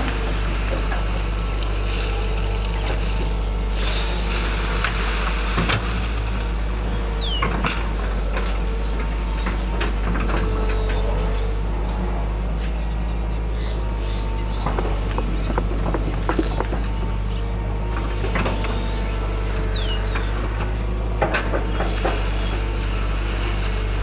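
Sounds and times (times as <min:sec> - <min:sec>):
excavator diesel engine: 0:00.0 - 0:24.0
knocks and clanks: 0:14.6 - 0:17.2.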